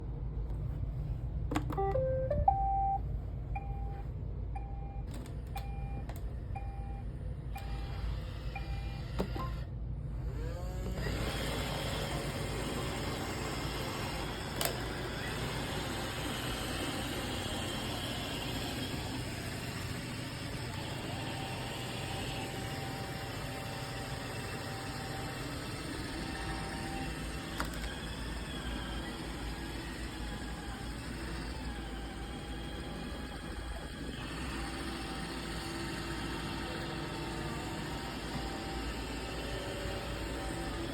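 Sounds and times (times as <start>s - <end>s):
robot vacuum motor whir: 7.5s - 40.9s.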